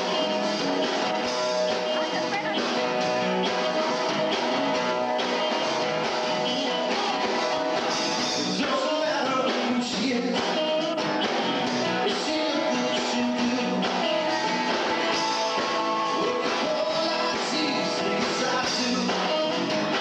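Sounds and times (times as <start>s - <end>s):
electric guitar: 0.0s - 20.0s
rock band playing live: 0.0s - 20.0s.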